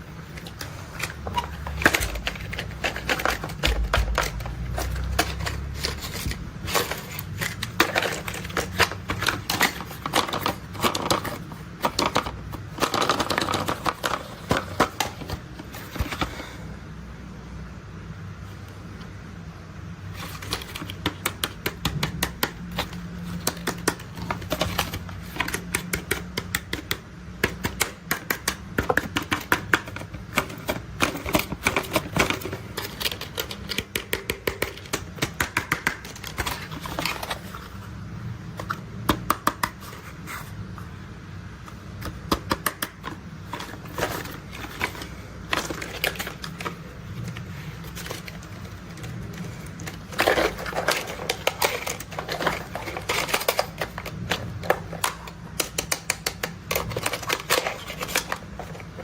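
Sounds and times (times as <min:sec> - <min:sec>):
toy vehicles clicking and tapping: 0:20.2 - 0:37.4, 0:42.0 - 0:59.0.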